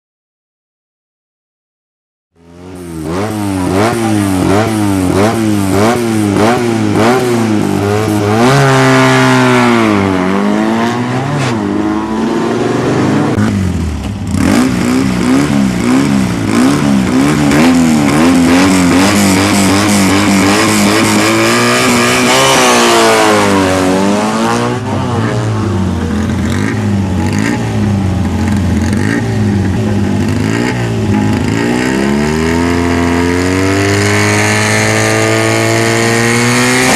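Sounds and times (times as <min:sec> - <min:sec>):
car engine revving: 0:02.4 - 0:36.9.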